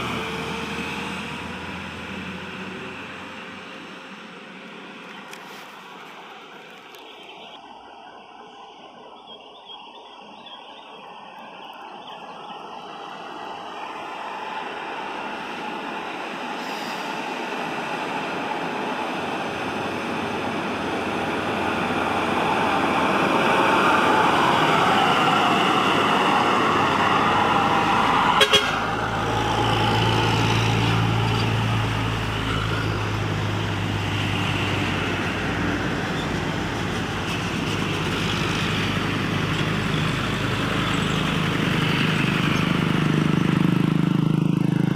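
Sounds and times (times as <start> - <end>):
heavy vehicle engine: 0.0 - 6.5, 12.4 - 44.9
vehicle horn: 28.3 - 29.0.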